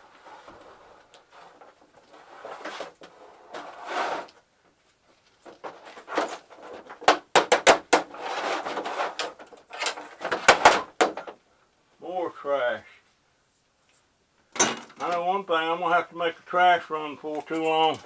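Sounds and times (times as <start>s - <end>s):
plastic and metal parts knocking: 5.4s - 11.4s.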